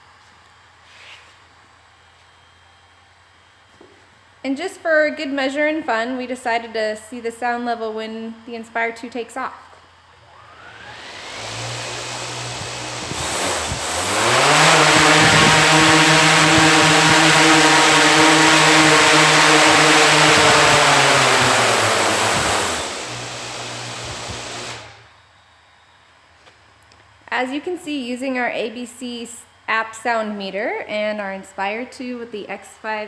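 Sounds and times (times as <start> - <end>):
quadcopter motors and propellers: 10.2 - 25.1.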